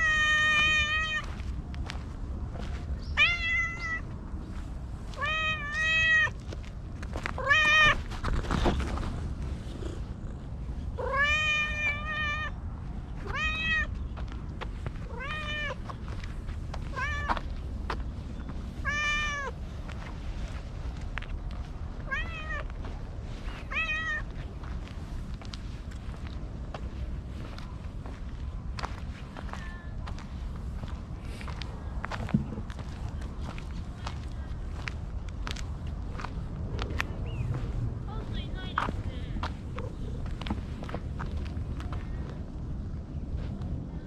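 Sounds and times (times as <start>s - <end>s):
cat meowing: 0.0s - 1.3s, 3.2s - 4.0s, 5.2s - 6.4s, 7.4s - 8.0s, 11.0s - 12.6s, 13.2s - 13.9s, 15.1s - 15.8s, 16.9s - 17.4s, 18.8s - 19.5s, 22.1s - 22.7s, 23.6s - 24.3s
low background rumble: 0.0s - 44.0s.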